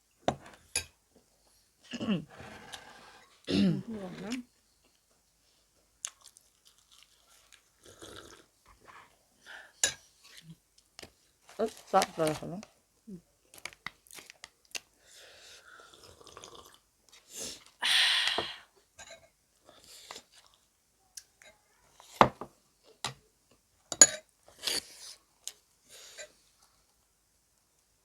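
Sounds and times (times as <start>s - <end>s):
chewing with wet mouth clicks: 6.0s - 7.6s.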